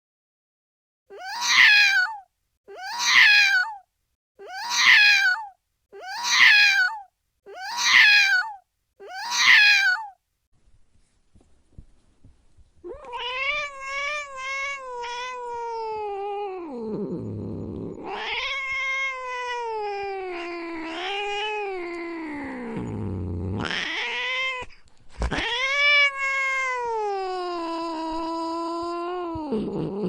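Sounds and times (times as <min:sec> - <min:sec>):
cat yowling: 0:01.1 - 0:10.2, 0:12.9 - 0:17.0, 0:18.0 - 0:22.9, 0:23.6 - 0:24.7, 0:25.3 - 0:29.7
cat growling: 0:12.9 - 0:30.0.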